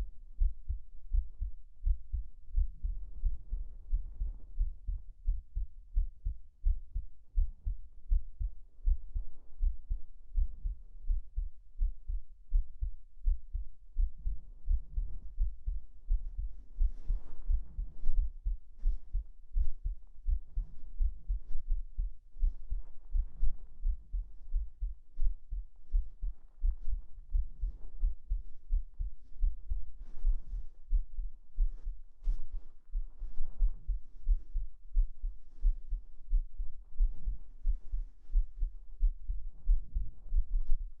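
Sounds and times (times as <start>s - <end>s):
heartbeat thumps: 0.0s - 41.0s
bedding fabric rustling: 26.0s - 34.5s.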